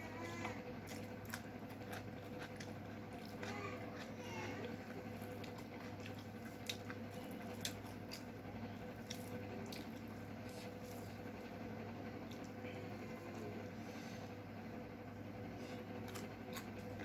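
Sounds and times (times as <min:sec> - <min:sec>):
wet eating squelches: 0:00.0 - 0:14.4, 0:15.4 - 0:17.0.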